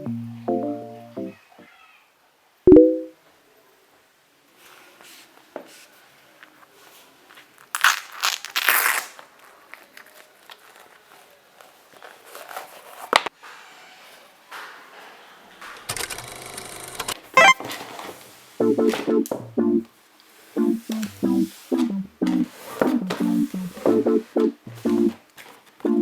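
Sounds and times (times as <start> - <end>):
crinkling and rustling: 4.6 - 13.4, 17.6 - 18.5, 25.0 - 25.9.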